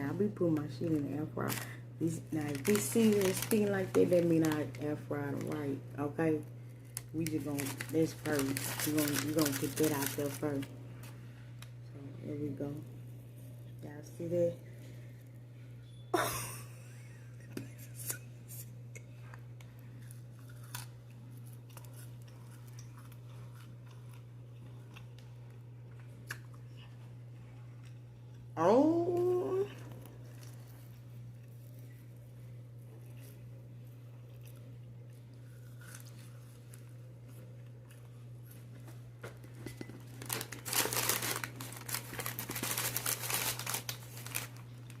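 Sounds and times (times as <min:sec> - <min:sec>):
steady low hum: 0:00.0 - 0:45.0
crunching fries from paper bag: 0:00.6 - 0:05.8, 0:07.0 - 0:10.7, 0:40.1 - 0:45.0
person chewing crunchy food: 0:19.6 - 0:28.5, 0:32.8 - 0:45.0.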